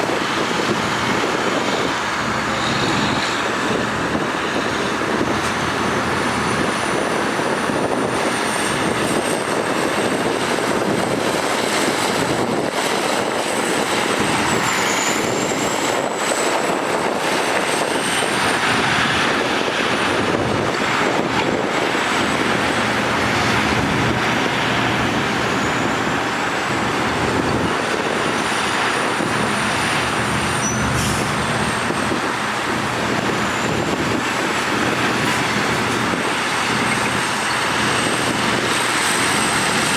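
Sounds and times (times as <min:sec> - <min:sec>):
heavy machinery diesel engines: 0:00.0 - 0:39.9.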